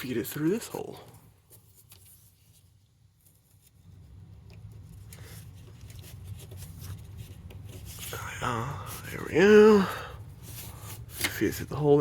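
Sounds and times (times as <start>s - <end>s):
wire rustling and scraping: 1.3s - 9.7s.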